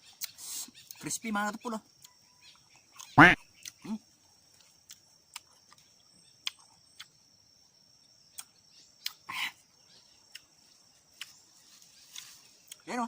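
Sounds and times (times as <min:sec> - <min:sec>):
crunching pods being chewed: 0:04.5 - 0:07.2, 0:10.2 - 0:12.9.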